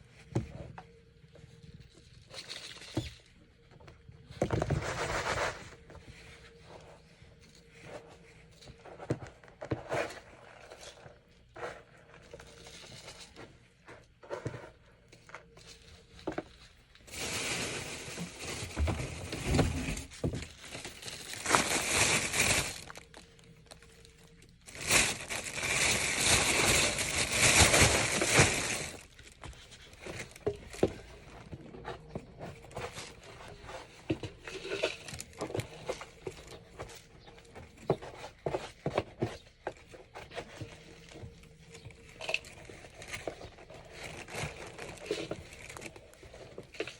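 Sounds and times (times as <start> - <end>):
rustling and crinkling: 0.0 - 46.9
litter box scraping: 17.1 - 23.2.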